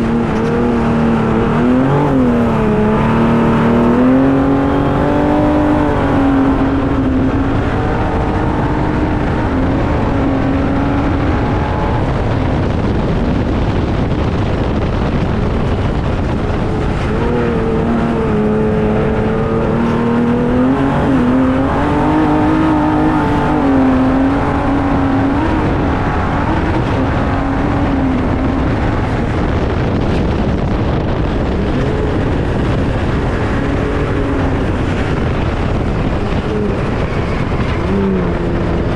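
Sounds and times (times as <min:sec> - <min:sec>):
loud rushing noise: 0:00.0 - 0:38.9
truck engine running hard: 0:00.0 - 0:38.9.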